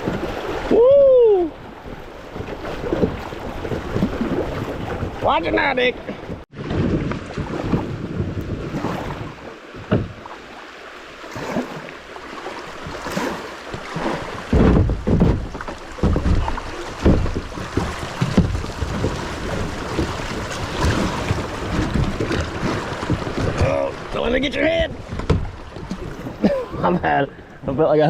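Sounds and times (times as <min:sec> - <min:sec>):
paddle strokes in water: 0:00.0 - 0:27.8
water splashing: 0:00.0 - 0:28.0
wind rumbling on microphone: 0:06.2 - 0:10.3, 0:13.8 - 0:27.9.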